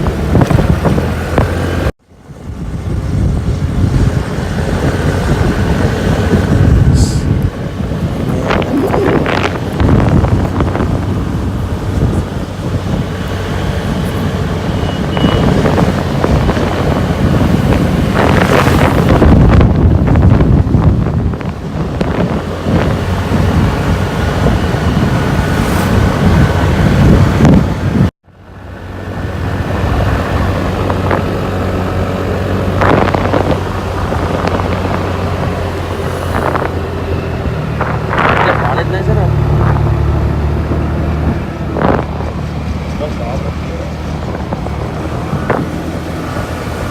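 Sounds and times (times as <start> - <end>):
motorcycle engine: 0.0 - 28.0
wind buffeting on microphone: 0.0 - 46.9.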